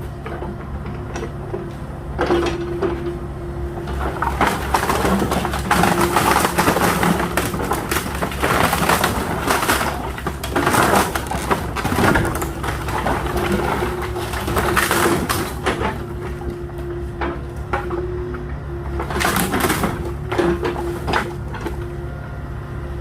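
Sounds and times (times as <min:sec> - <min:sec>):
excavator engine running: 0:00.0 - 0:23.0
wooden pallets cracking: 0:03.8 - 0:18.0, 0:19.0 - 0:21.8.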